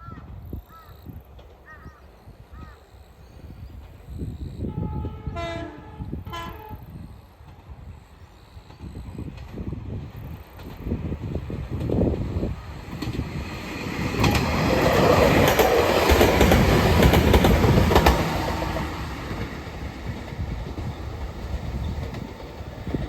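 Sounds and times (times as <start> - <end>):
electric train passing: 0.3 - 23.0
wheels clacking over rail joints: 9.3 - 23.0.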